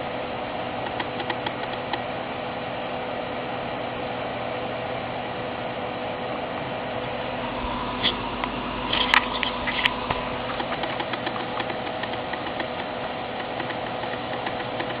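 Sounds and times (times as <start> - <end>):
computer fans humming: 0.0 - 15.0
cat clicking in sleep: 0.8 - 2.0, 10.5 - 15.0.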